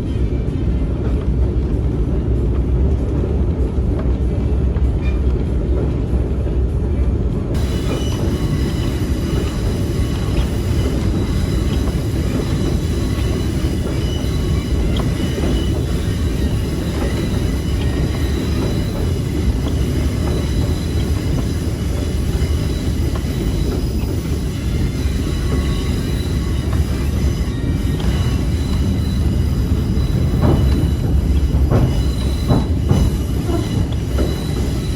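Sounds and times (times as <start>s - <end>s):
train wheels rumbling on rail: 0.0s - 34.9s
high-pitched squeal: 7.6s - 34.9s.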